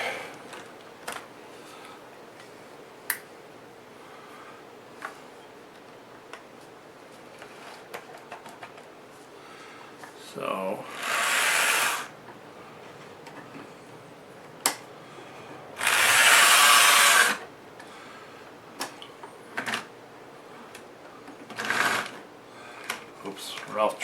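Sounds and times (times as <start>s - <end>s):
model locomotive motor whirring: 10.9s - 12.1s, 15.8s - 17.4s.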